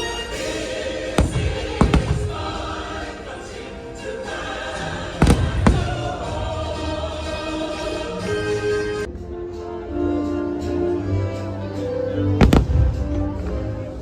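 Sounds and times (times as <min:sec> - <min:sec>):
choir singing over orchestra: 0:00.0 - 0:09.1
firework bursts: 0:00.4 - 0:06.8, 0:12.4 - 0:13.2.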